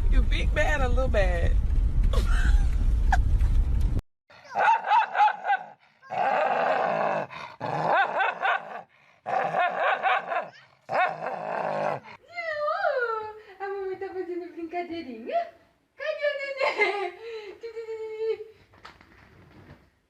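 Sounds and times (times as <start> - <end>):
dog howling: 4.5 - 12.1.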